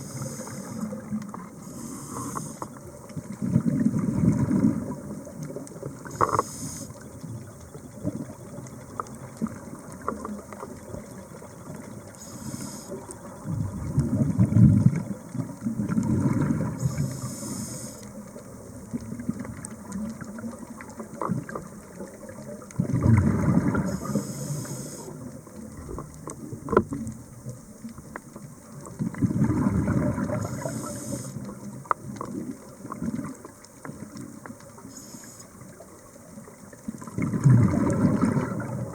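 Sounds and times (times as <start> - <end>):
regulator inhale hiss: 0.0 - 1.0, 1.6 - 2.8, 6.0 - 7.0, 12.2 - 13.2, 16.7 - 18.2, 23.8 - 25.3, 30.4 - 31.6, 34.8 - 35.7
exhale bubbling rumble: 3.0 - 6.4, 7.3 - 17.6, 18.2 - 34.4, 36.4 - 38.9.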